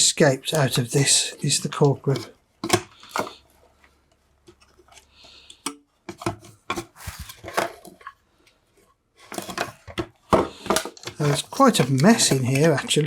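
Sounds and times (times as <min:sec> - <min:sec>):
plastic case handling clatter: 0:06.1 - 0:08.2, 0:09.2 - 0:13.0.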